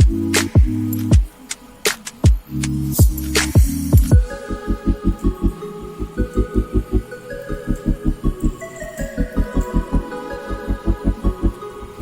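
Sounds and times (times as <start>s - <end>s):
pulsing bass: 0.0s - 1.2s, 2.6s - 5.6s
kick drum beats: 0.0s - 1.4s, 2.2s - 2.4s, 3.0s - 4.3s
steady high synth tones: 0.0s - 12.0s.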